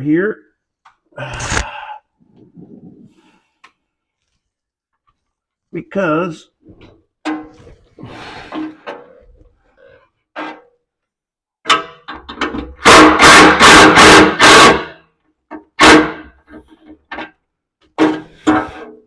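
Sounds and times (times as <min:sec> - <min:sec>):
impact wrench bursts: 0:12.8 - 0:15.0.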